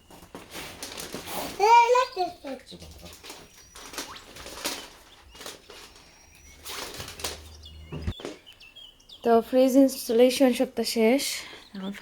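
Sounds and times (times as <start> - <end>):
rustling and clicking handling noises: 0.0 - 1.6, 2.5 - 8.4.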